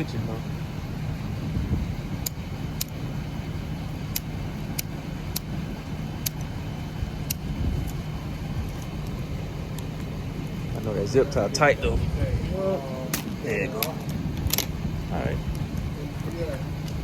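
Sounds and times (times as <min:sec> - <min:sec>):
steady low hum: 0:00.0 - 0:17.0
gear shifter clicks: 0:02.1 - 0:03.0, 0:04.0 - 0:05.6, 0:06.2 - 0:06.6, 0:07.2 - 0:10.1, 0:13.1 - 0:14.8.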